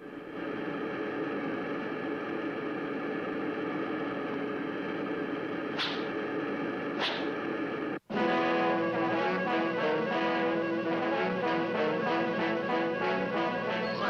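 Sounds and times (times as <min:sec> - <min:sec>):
noisy cartoon sound effect: 0:11.5 - 0:14.0.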